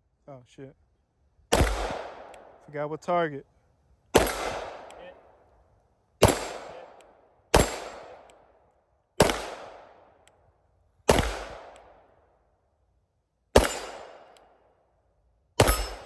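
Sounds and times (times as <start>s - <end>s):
handgun shots with echo: 1.5s - 2.5s, 4.2s - 5.0s, 6.2s - 8.4s, 9.2s - 10.0s, 11.1s - 11.9s, 13.6s - 14.5s, 15.6s - 16.0s.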